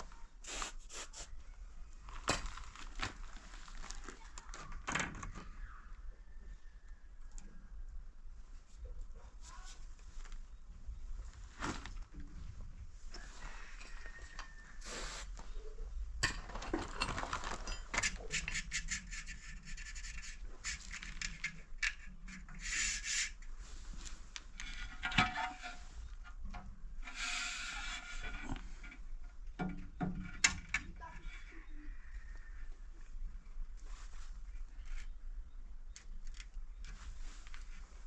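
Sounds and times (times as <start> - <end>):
scraping and rubbing: 16.9 - 26.4, 27.0 - 29.2.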